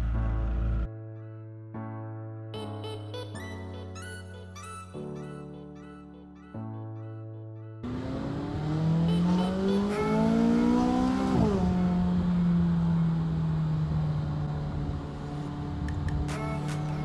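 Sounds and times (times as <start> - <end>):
car engine accelerating: 7.8 - 17.0.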